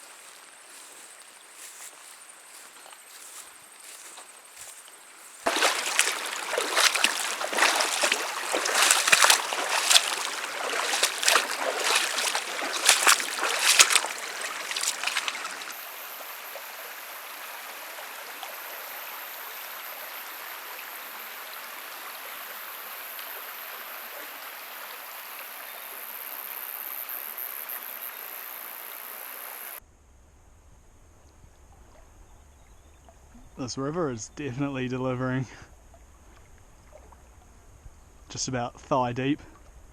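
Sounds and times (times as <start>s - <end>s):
water splashing and sloshing: 0.0s - 16.1s, 35.9s - 37.5s
river water flowing: 0.0s - 25.3s.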